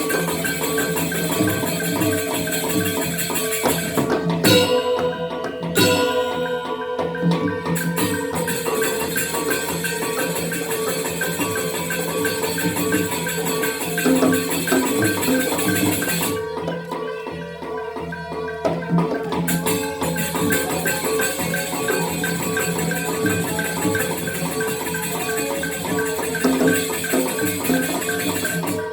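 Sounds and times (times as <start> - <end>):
metallophones fast interlocking strikes: 0.0 - 16.6, 19.5 - 28.9
shimmering cymbals: 0.0 - 17.0, 19.3 - 28.9
gong tones: 4.4 - 11.0.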